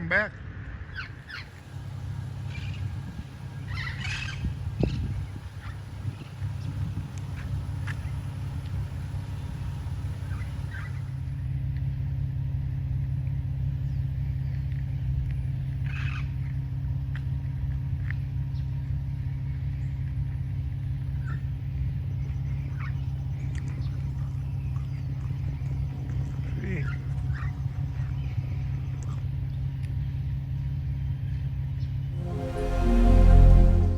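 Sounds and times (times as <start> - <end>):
low mechanical hum: 1.2 - 12.1.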